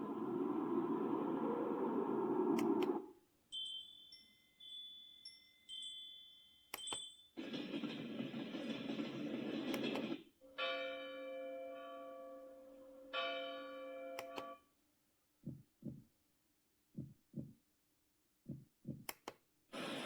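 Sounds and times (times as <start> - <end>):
tinkling chime tones: 3.5 - 7.5
sharp clicks: 18.9 - 19.4.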